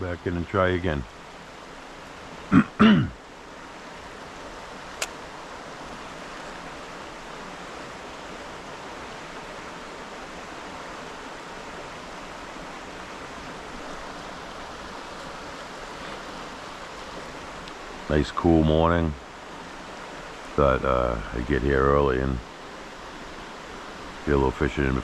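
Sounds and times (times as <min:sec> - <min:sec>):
river water rushing: 0:00.0 - 0:25.0
sharp click: 0:05.0 - 0:05.2.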